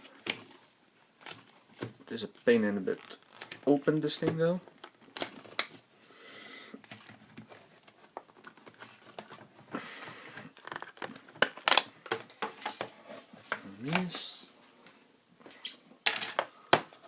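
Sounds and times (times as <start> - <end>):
plastic scraping rustles: 6.8 - 15.0.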